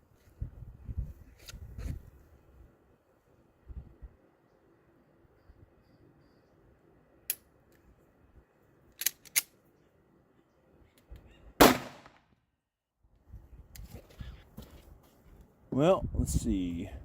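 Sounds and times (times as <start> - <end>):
pistol shot: 11.6 - 12.3
quieter sharp cracks: 11.6 - 12.4.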